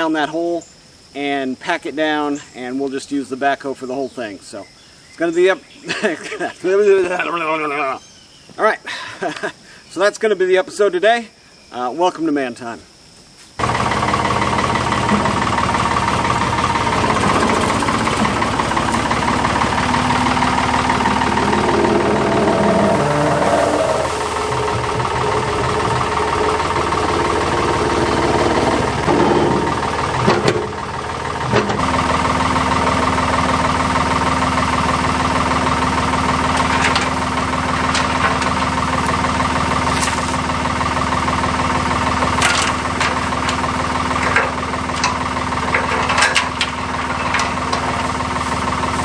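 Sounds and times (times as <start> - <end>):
sharp metal clanks and rattles: 13.6 - 23.5, 36.5 - 40.6, 42.2 - 49.0
diesel engine running: 13.6 - 49.0.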